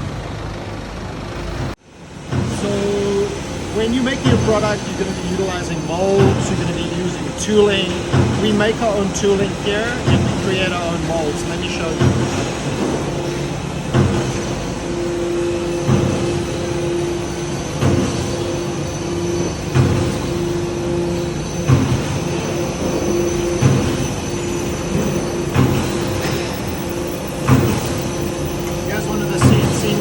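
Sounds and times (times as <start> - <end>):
factory machinery humming and whining: 0.0 - 30.0
low thumps: 2.3 - 30.0.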